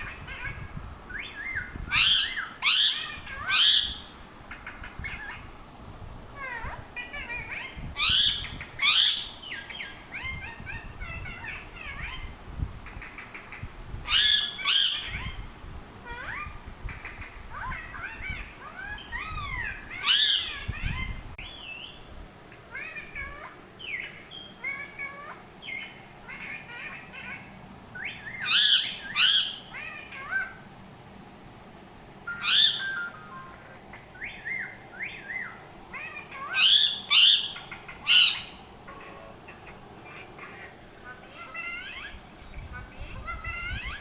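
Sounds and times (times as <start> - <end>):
parrot harsh squawks: 0.0 - 5.4, 6.4 - 12.3, 14.1 - 15.4, 17.5 - 21.0, 22.7 - 30.6, 32.2 - 44.0
parrot chirping and whistling: 1.1 - 4.1, 28.0 - 30.3, 32.3 - 38.6.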